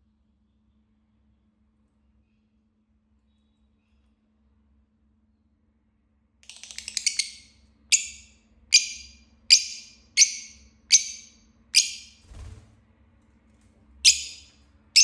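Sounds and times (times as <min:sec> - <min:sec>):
lovebird chirping and calling: 0:06.4 - 0:12.2, 0:14.0 - 0:15.0.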